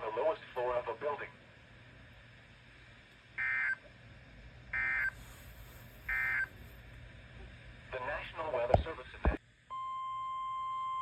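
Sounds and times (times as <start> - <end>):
digital data tone bursts: 6.1 - 6.5.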